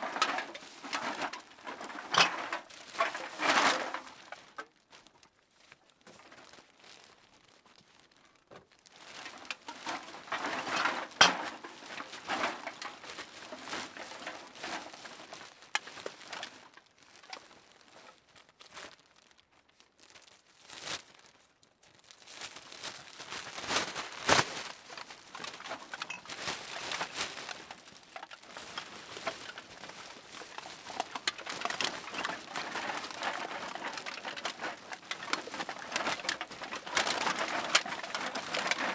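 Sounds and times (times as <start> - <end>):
bag rustling and crinkling: 0.0 - 38.9.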